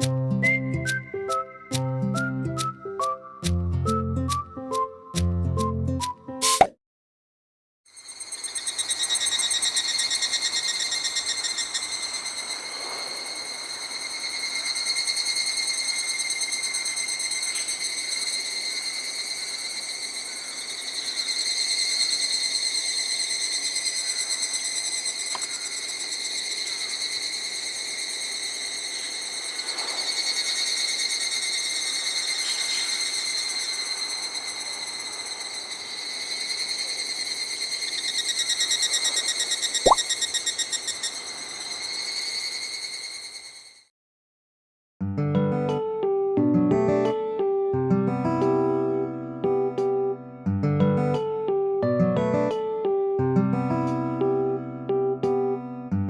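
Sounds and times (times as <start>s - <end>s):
insects trilling: 0.0s - 1.5s, 7.9s - 43.9s.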